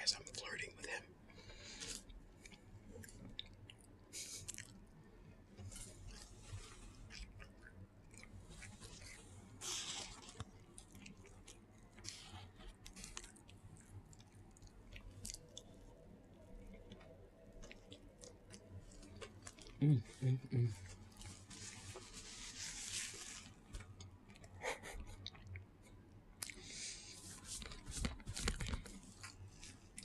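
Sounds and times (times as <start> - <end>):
person chewing with mouth clicks: 1.8 - 4.8, 5.7 - 9.2, 10.0 - 15.9, 16.6 - 20.1, 24.0 - 25.7, 26.4 - 26.8.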